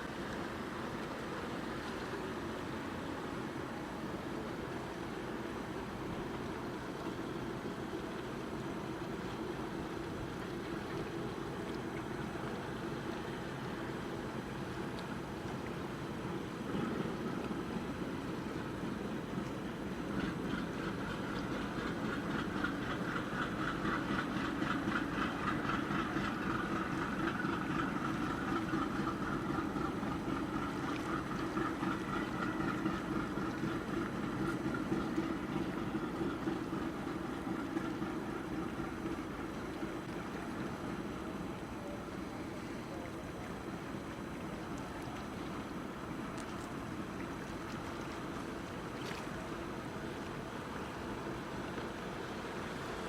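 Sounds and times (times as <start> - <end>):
passing engine hum: 0.1 - 53.0.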